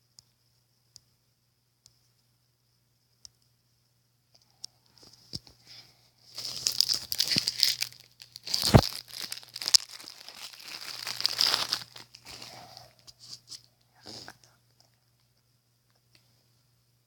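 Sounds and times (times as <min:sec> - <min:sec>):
wrapper crinkling and tearing: 0:06.4 - 0:13.7.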